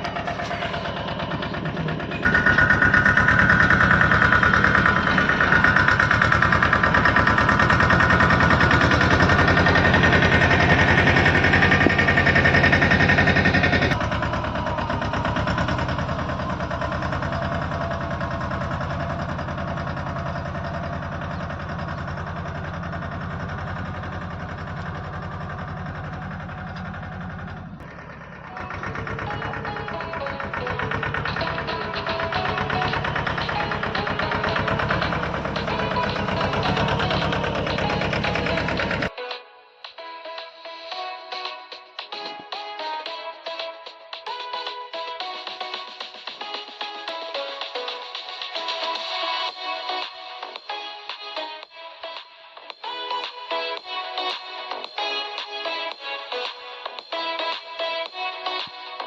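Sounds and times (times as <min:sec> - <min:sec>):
tractor diesel engine running: 0:00.0 - 0:39.1.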